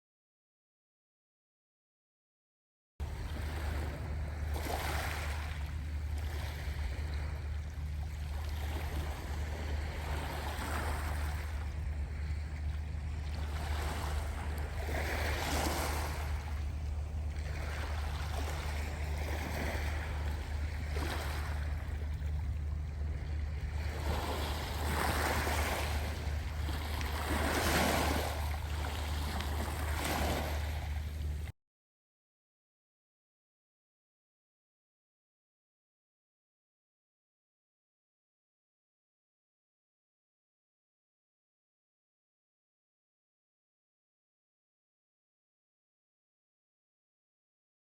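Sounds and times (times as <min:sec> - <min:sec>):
low rumble: 0:03.0 - 0:31.5
waves surging in: 0:03.0 - 0:31.5.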